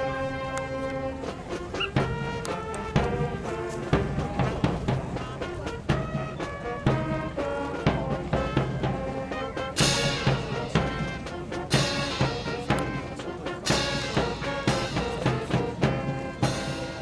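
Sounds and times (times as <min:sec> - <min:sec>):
brass band music with drums: 0:00.0 - 0:17.0.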